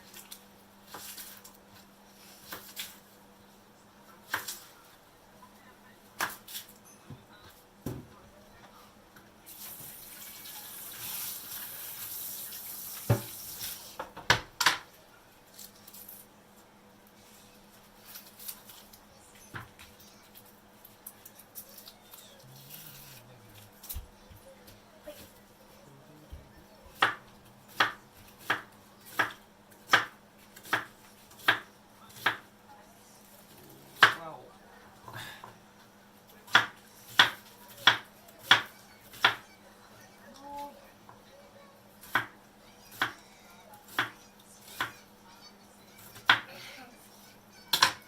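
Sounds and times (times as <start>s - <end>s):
hard object knocking in sink: 13.1s - 13.4s
knife chopping on cutting board: 13.1s - 13.4s, 26.9s - 32.5s, 34.0s - 34.2s, 36.5s - 39.4s, 46.1s - 46.5s.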